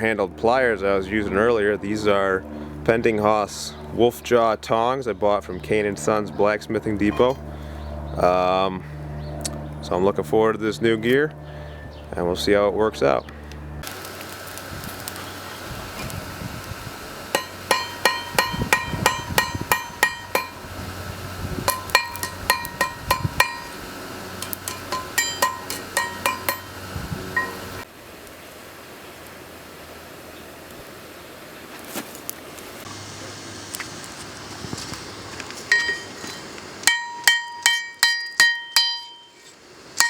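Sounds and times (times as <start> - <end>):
hammer ringing on steel: 17.4 - 20.6, 21.7 - 23.8, 24.4 - 26.8, 27.4 - 27.6, 35.7 - 36.2, 36.9 - 39.4.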